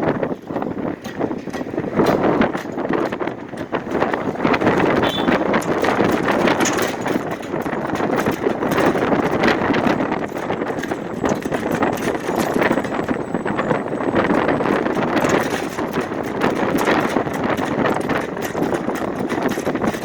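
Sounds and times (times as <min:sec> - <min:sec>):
sign rattling in wind: 0:00.0 - 0:20.0
wind rushing: 0:00.0 - 0:20.0.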